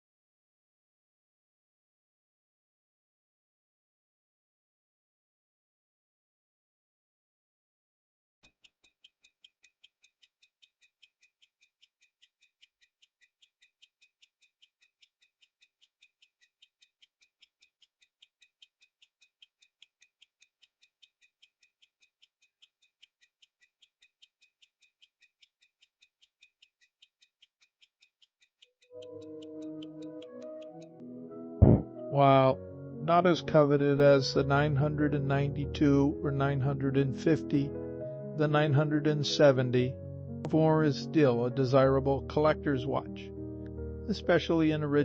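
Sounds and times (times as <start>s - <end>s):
pocket watch ticking: 8.4s - 31.0s
soft music: 29.0s - 45.0s.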